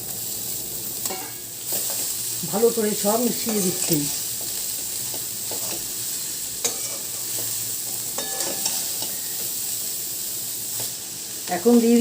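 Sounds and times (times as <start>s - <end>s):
food sizzling in a pan: 0.0s - 12.0s
spatula scraping a pan: 6.6s - 7.5s, 8.1s - 9.4s.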